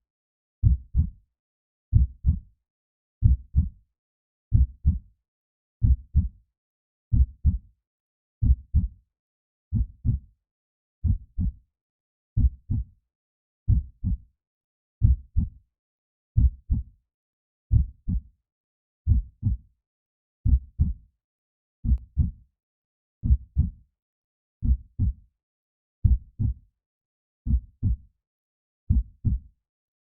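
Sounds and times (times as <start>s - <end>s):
heartbeat thumps: 0.6s - 1.1s, 1.9s - 2.4s, 19.1s - 19.6s, 26.0s - 26.6s, 27.5s - 28.0s.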